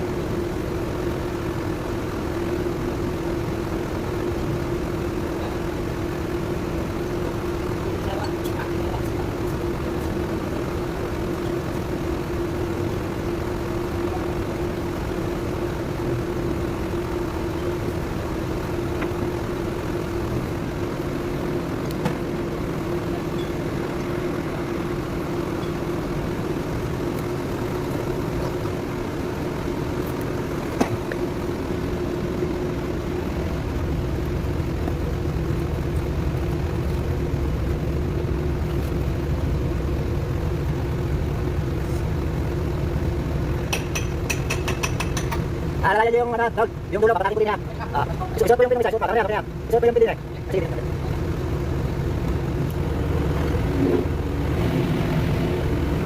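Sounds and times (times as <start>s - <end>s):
engine humming steadily: 0.0s - 56.0s
sharp metallic knocks: 43.7s - 45.5s.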